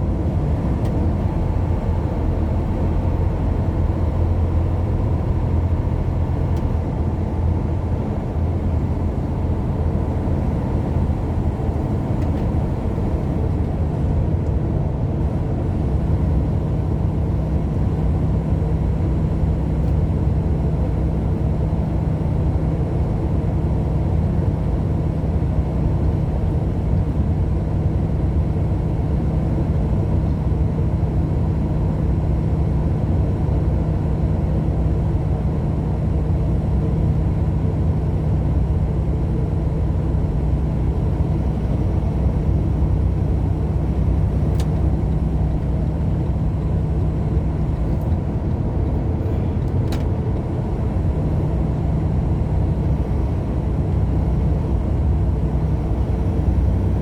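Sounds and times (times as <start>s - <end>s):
engine and tyre rumble: 0.0s - 57.0s.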